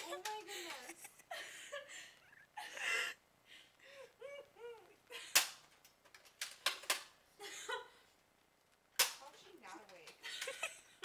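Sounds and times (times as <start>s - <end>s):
breathy giggling: 0.4s - 5.4s.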